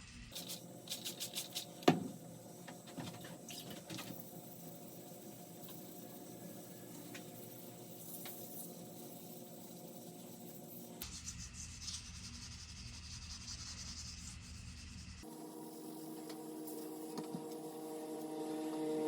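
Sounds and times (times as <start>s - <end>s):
sandpaper rubbing on metal blade: 7.5s - 17.2s.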